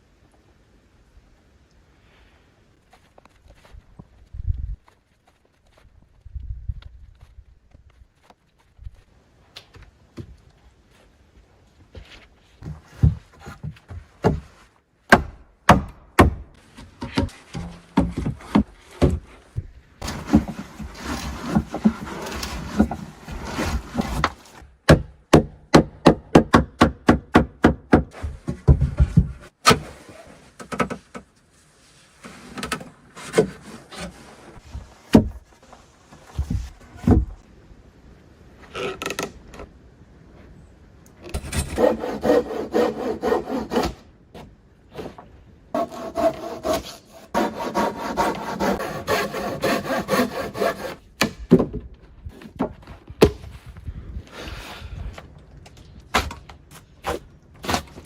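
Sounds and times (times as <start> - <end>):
scraping or sawing on wood: 20.0 - 24.6, 41.3 - 45.2, 45.8 - 51.0.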